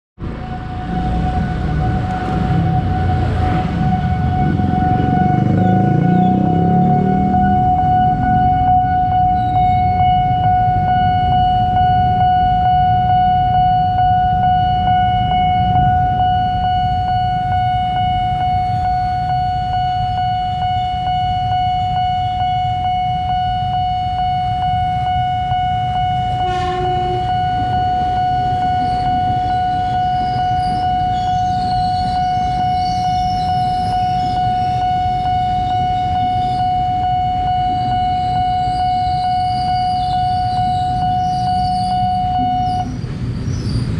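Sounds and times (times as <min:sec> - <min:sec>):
crossing warning tone: 0:00.2 - 0:43.9
train rumbling: 0:00.2 - 0:43.9
metallic wheel squeal: 0:24.8 - 0:43.9.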